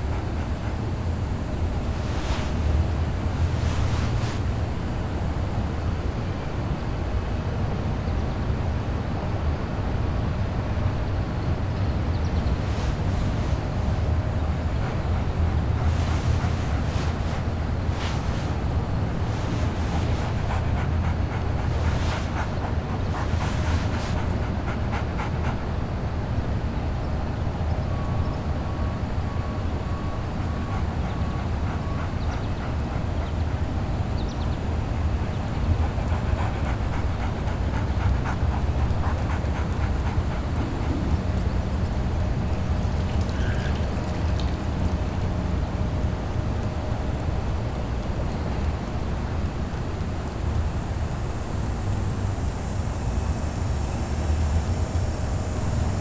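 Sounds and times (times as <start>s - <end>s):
rustling and scuffing: 0.0s - 5.2s, 12.1s - 25.7s
wind buffeting microphone: 11.1s - 26.4s.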